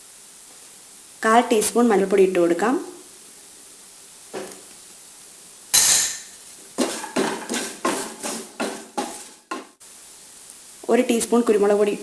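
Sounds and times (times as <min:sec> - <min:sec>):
metal utensil scraping a pan: 0:06.8 - 0:09.7.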